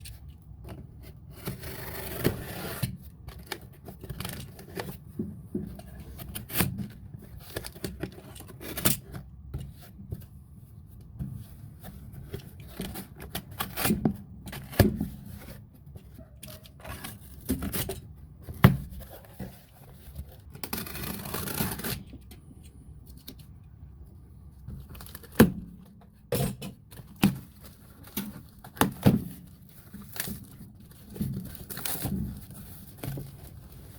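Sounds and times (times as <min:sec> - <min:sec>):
packaging rustling and tearing: 0:18.9 - 0:22.2, 0:26.9 - 0:33.9.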